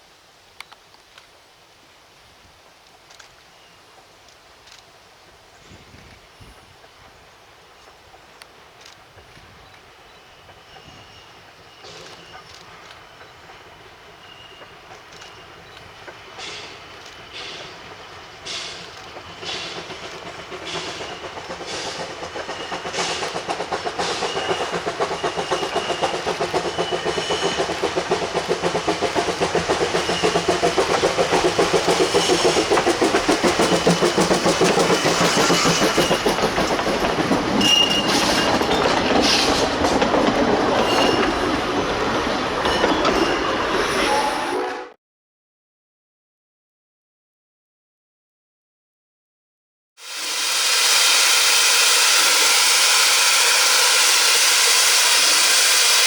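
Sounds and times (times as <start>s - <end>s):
steam locomotive approaching: 1.2s - 45.0s, 50.0s - 56.0s
wheels clicking over rail joints: 6.8s - 43.9s.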